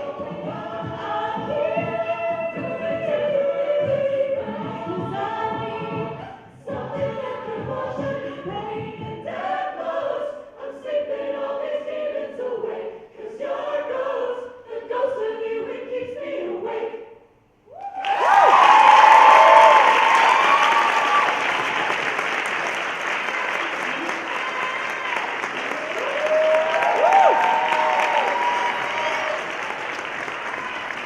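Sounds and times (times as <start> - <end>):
a cappella group singing in harmony: 0.0 - 17.4
audience applause: 17.8 - 31.0.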